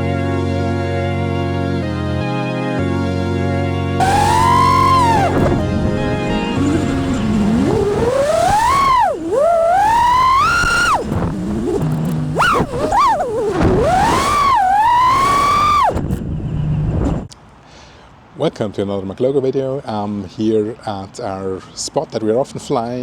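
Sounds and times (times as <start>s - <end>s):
drone motors whining: 4.0s - 16.2s.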